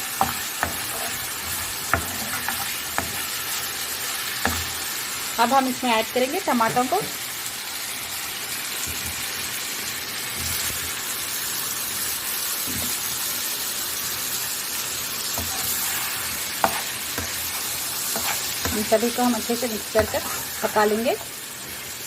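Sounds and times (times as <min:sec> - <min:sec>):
food sizzling in a pan: 0:00.0 - 0:22.0
spoon knocking against a pan: 0:16.6 - 0:17.4.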